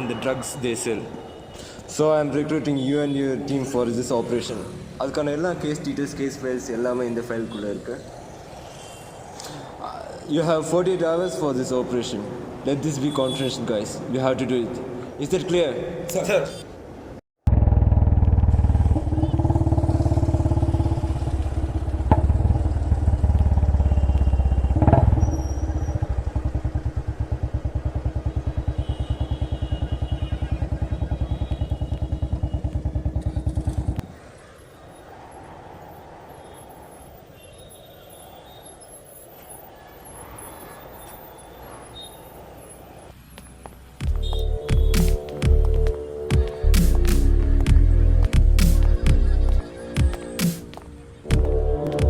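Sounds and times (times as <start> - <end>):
vehicle engine running: 17.5 - 34.0.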